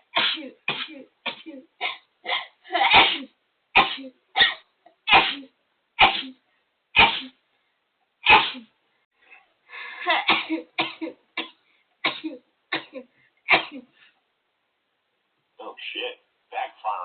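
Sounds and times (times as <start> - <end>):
person sneezing: 0.1 - 6.4, 7.0 - 7.4, 8.2 - 8.7.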